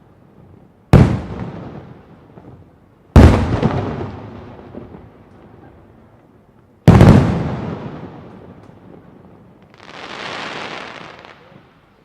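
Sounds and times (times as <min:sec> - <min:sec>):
firework bang with rumbling echo: 0:06.9 - 0:08.3.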